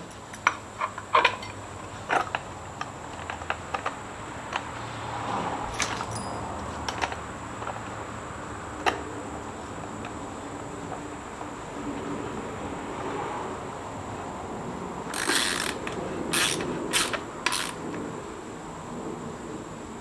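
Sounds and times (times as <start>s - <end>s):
metallic clicks of small parts: 5.7s - 7.2s, 15.1s - 17.8s.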